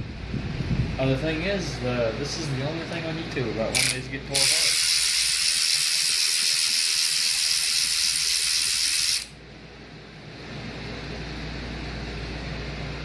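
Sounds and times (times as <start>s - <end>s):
air ratchet hissing: 3.8s - 9.4s.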